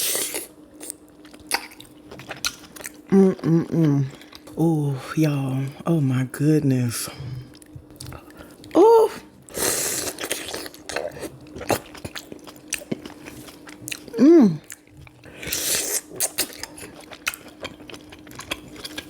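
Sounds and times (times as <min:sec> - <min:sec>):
person humming mm: 0:03.1 - 0:05.1, 0:08.8 - 0:09.3, 0:14.1 - 0:14.7.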